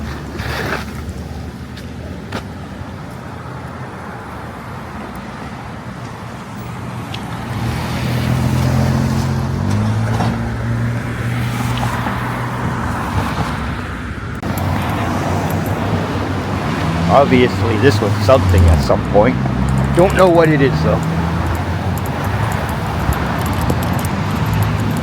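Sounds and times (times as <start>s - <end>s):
busy street traffic: 0.0s - 25.0s
nearby vehicle engine hum: 6.6s - 25.0s.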